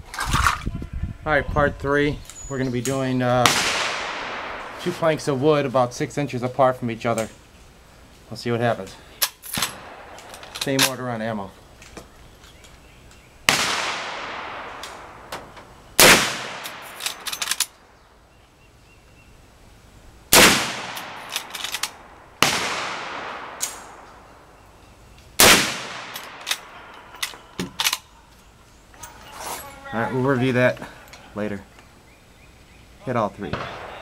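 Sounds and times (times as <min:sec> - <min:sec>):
gunshots with long echo: 0:03.4 - 0:05.4, 0:09.7 - 0:10.5, 0:13.5 - 0:15.3, 0:16.0 - 0:17.3, 0:20.3 - 0:24.5, 0:25.4 - 0:27.5, 0:33.5 - 0:34.0.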